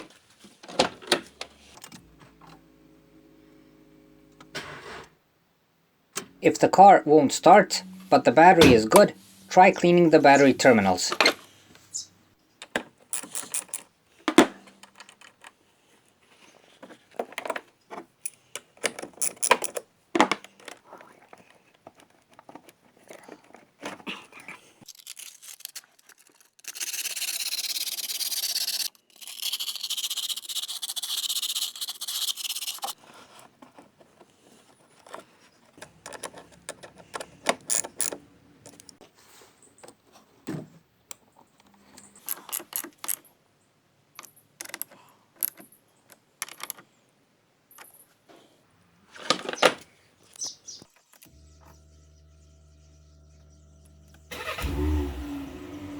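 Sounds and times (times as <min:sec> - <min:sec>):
clicks and small metal knocks: 0:12.6 - 0:15.6, 0:16.6 - 0:26.8, 0:32.8 - 0:39.0, 0:39.8 - 0:43.4, 0:44.2 - 0:46.9, 0:47.7 - 0:48.2
sandpaper scrubbing metal: 0:26.8 - 0:33.0.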